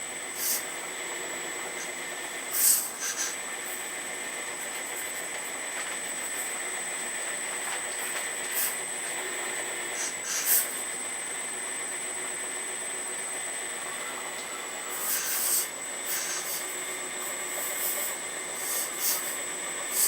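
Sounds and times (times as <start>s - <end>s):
hydraulic pump whine: 0.0s - 20.0s
hiss: 0.4s - 0.7s, 2.5s - 3.4s, 8.5s - 8.8s, 10.0s - 10.8s, 14.9s - 16.8s, 17.6s - 20.0s.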